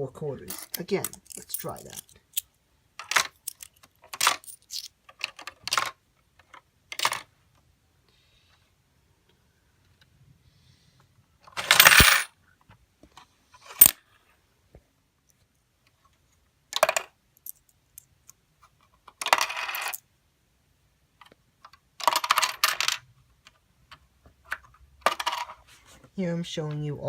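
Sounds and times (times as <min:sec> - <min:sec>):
coins clattering in plastic mechanism: 0:00.5 - 0:02.4, 0:03.0 - 0:05.9, 0:11.6 - 0:12.3, 0:19.2 - 0:20.0, 0:22.0 - 0:23.0, 0:25.0 - 0:25.6.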